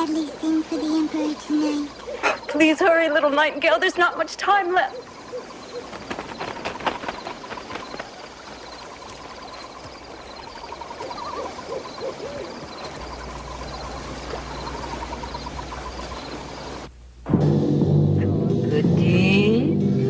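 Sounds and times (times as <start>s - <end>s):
owl hooting: 3.7s - 9.0s, 10.3s - 16.9s.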